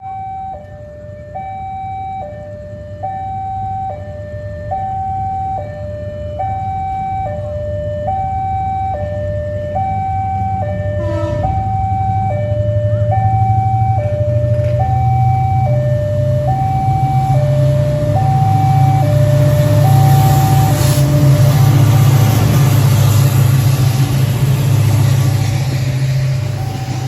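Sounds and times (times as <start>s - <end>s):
two-tone crossing alarm: 0.0s - 27.0s
low rumble: 10.0s - 27.0s.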